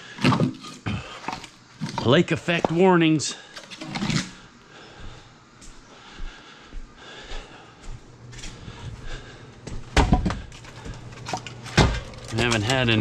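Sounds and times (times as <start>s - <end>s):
person breathing hard: 3.3s - 11.1s.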